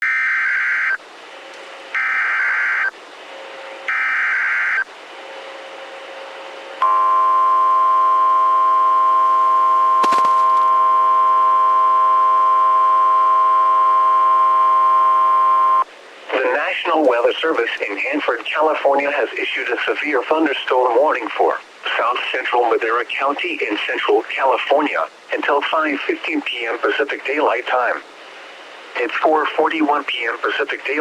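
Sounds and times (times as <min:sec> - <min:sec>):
long steady warning tone: 0:00.0 - 0:01.1, 0:01.8 - 0:16.8.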